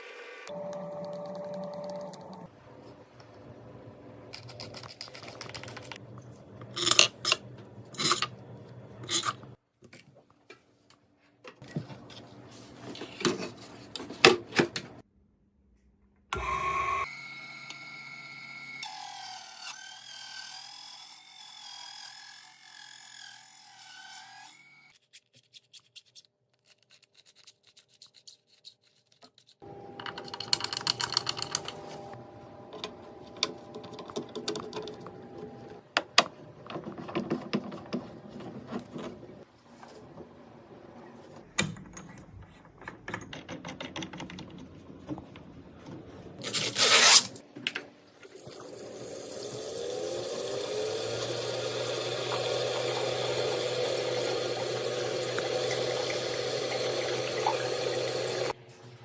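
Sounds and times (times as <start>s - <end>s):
small hard parts clicking and tapping: 30.0s - 31.8s, 41.6s - 45.5s.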